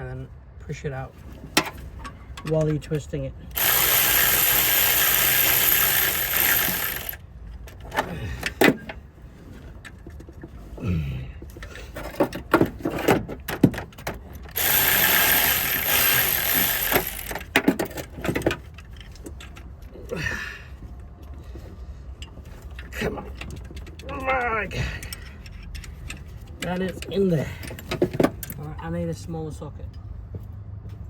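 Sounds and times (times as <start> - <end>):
power tool running: 3.5 - 7.2, 14.5 - 17.5.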